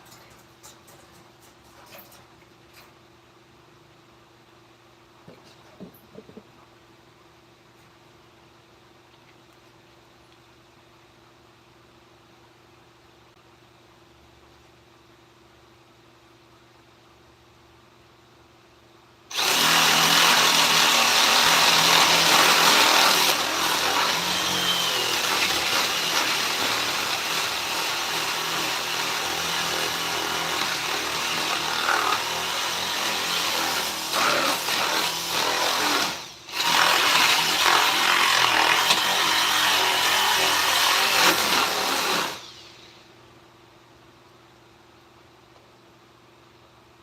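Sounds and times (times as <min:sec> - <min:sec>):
power tool running against wood: 0:19.3 - 0:42.9.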